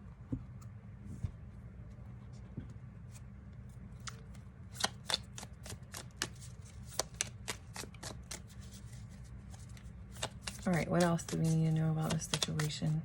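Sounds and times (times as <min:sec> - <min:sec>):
low steady hum: 0:00.0 - 0:13.0
cards being shuffled: 0:04.0 - 0:13.0.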